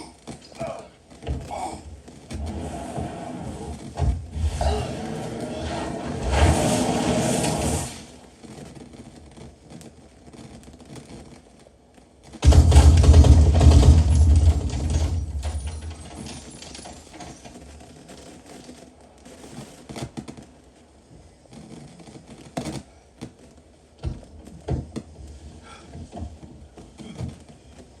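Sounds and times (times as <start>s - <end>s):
loud burst of gunfire: 12.4s - 16.9s.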